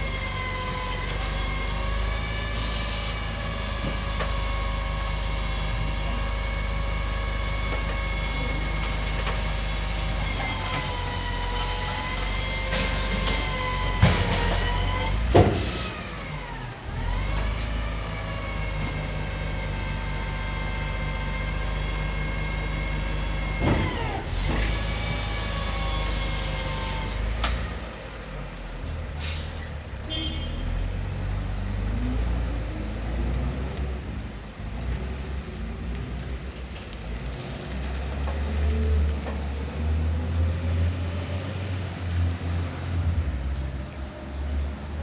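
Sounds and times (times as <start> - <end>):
garbage truck engine running: 0.0 - 30.0
short air hisses: 29.2 - 29.7.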